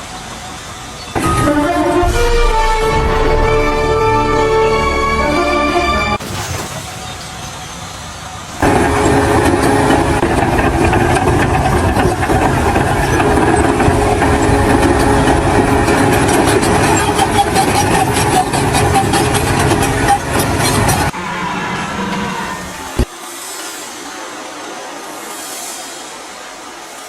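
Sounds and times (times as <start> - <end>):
engine running: 0.0 - 6.2, 7.6 - 23.1.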